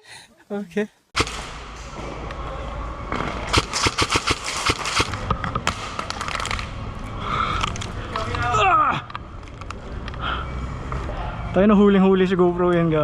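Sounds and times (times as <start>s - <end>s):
airsoft guns firing: 1.2s - 1.8s, 3.5s - 6.5s.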